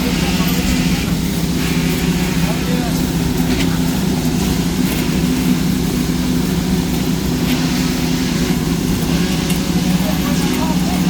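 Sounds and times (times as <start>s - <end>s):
heavy machinery engine droning: 0.0s - 11.0s.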